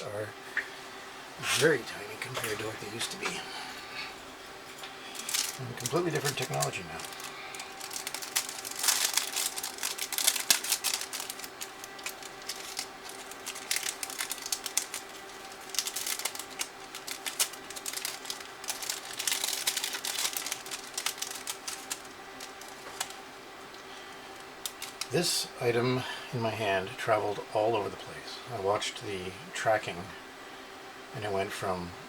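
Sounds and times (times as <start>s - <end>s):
faint steady hum: 0.0s - 32.0s
small parts clicking and rattling: 5.2s - 25.1s.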